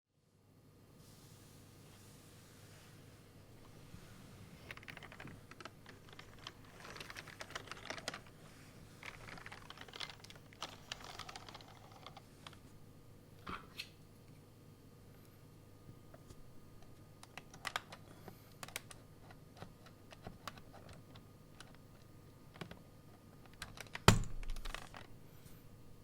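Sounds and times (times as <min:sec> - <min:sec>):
clicking keyboard keystrokes: 0:23.5 - 0:25.1.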